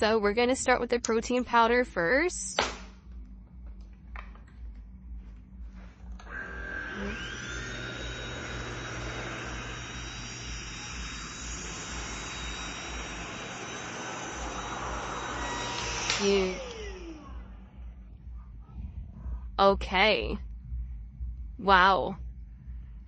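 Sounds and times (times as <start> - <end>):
stick vacuum motor whining: 6.1 - 17.8.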